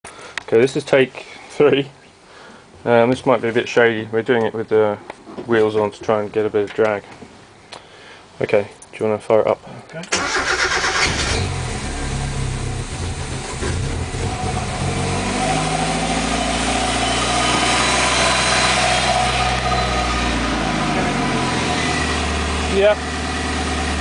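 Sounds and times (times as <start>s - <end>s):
car engine starting and revving: 10.1s - 24.0s.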